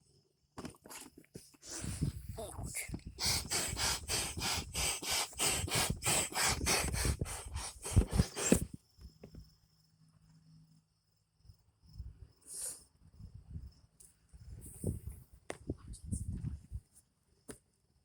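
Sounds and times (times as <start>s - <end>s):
crickets chirping: 1.4s - 18.0s
fast rhythmic scraping strokes: 3.2s - 8.7s.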